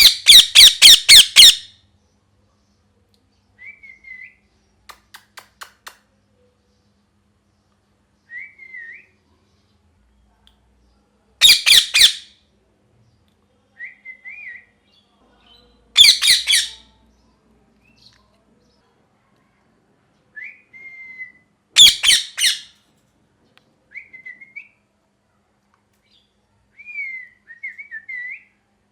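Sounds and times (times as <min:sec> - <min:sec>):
parrot screeching: 0:00.0 - 0:01.7, 0:11.4 - 0:12.3, 0:16.0 - 0:16.8, 0:21.8 - 0:22.7.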